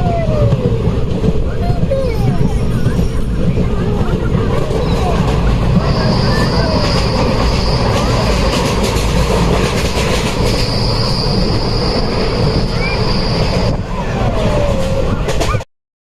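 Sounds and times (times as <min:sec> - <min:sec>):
train carriage rumbling on rails: 0:00.0 - 0:15.6
high thin wheel squeal: 0:04.8 - 0:08.9, 0:09.9 - 0:13.8.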